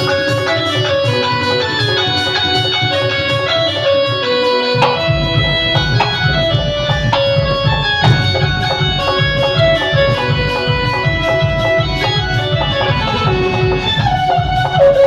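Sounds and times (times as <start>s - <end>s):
plucked string melody: 0.0s - 15.0s.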